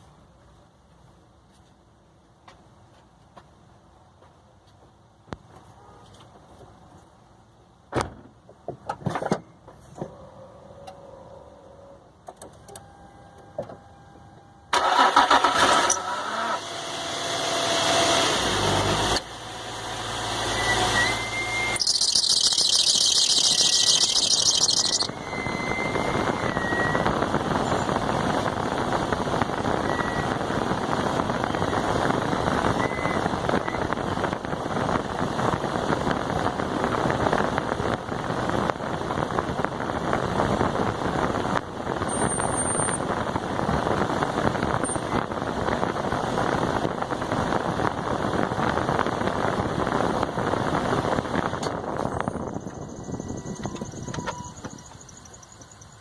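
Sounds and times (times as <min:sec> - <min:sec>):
car engine starting and idling: 0:14.7 - 0:56.0
high wavering squeak: 0:20.5 - 0:27.8.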